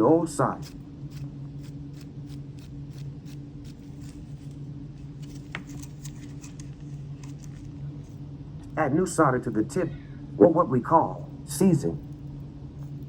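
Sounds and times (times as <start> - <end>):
steady low hum: 0.0 - 13.0
soldering iron tip scratching: 0.6 - 4.6.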